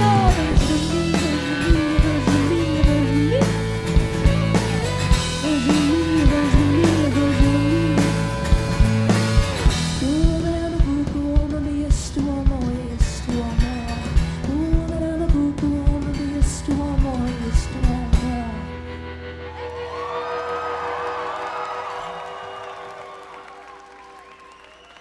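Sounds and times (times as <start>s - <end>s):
person singing: 0.0s - 8.6s, 10.0s - 18.8s
live rock band playing: 0.0s - 22.0s
crowd cheering and whooping: 19.4s - 25.0s.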